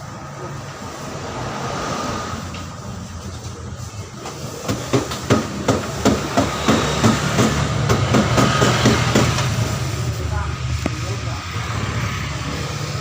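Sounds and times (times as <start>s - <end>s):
sharp knocks: 4.7s - 9.6s.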